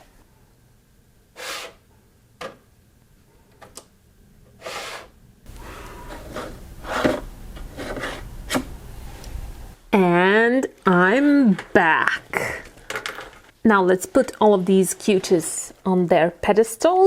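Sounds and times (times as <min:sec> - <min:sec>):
small clicks and shuffling: 0:12.6 - 0:13.5.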